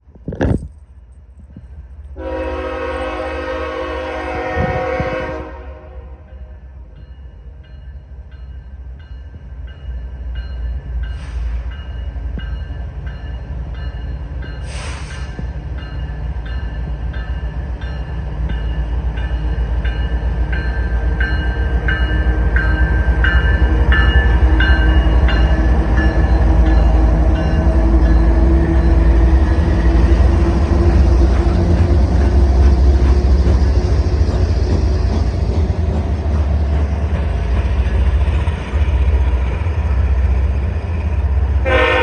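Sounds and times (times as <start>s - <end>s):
diesel train rumble: 0.0s - 42.0s
brief hisses: 14.7s - 15.4s.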